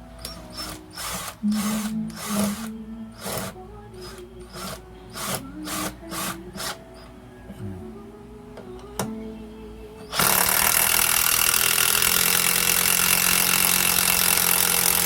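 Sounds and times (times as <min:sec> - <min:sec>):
background music: 0:00.0 - 0:15.0
impact drill motor bursts: 0:00.2 - 0:07.1, 0:10.1 - 0:15.0.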